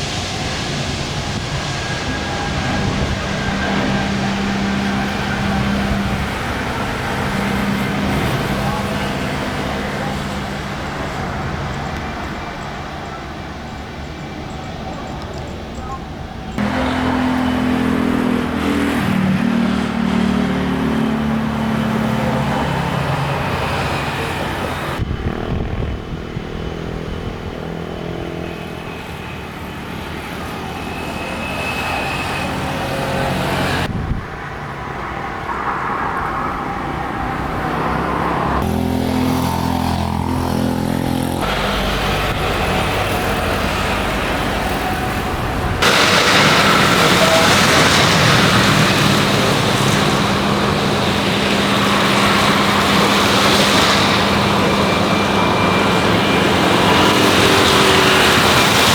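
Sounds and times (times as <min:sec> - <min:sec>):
engine and traffic noise: 0:00.0 - 0:58.9
bright rushing noise: 0:38.6 - 0:58.9.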